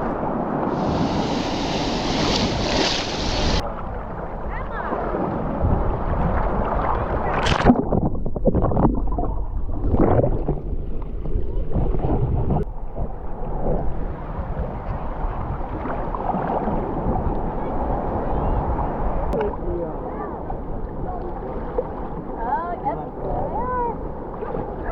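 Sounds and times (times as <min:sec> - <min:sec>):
underwater sloshing and gurgling: 0:00.2 - 0:24.9
sharp water splash: 0:00.7 - 0:03.6, 0:04.8 - 0:10.6.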